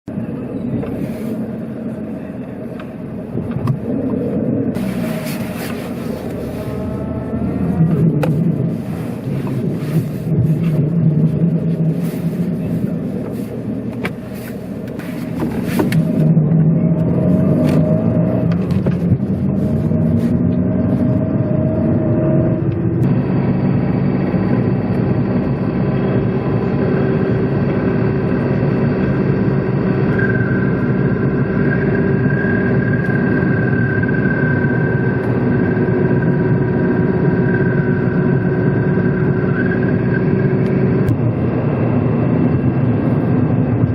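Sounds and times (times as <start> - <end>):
car driving and accelerating: 0.0 - 43.9
thin steady whine: 0.1 - 43.9.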